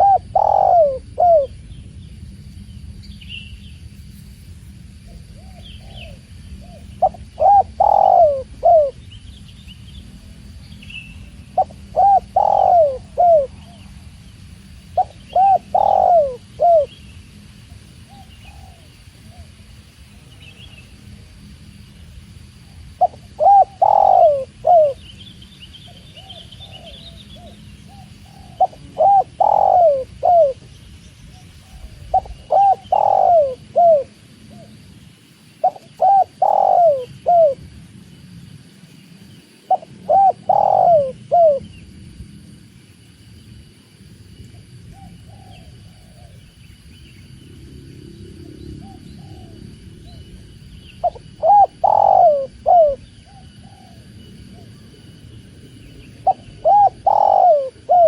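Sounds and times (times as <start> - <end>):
dove cooing: 0.0 - 1.6, 5.1 - 9.0, 11.4 - 14.1, 14.9 - 17.0, 17.8 - 19.7, 22.7 - 25.2, 25.9 - 30.7, 31.4 - 34.8, 35.6 - 37.7, 39.7 - 41.7, 44.5 - 46.5, 48.4 - 50.3, 51.0 - 55.2, 56.2 - 58.0
faint background hiss: 0.0 - 58.0.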